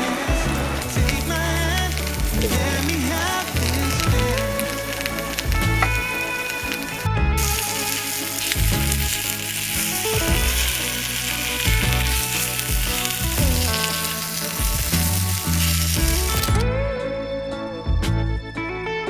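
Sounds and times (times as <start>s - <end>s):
food sizzling in a pan: 0.0s - 16.5s
background music: 0.0s - 19.0s.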